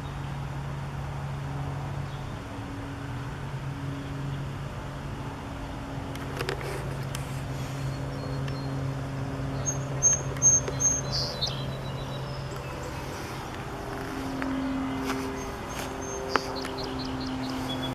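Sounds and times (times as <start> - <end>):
steady low hum: 0.0 - 17.9
bird chirping: 7.6 - 17.9.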